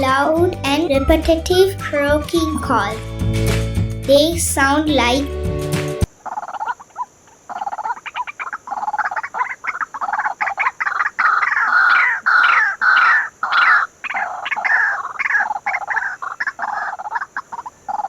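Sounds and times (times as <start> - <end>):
bird croaking call: 6.2 - 18.0.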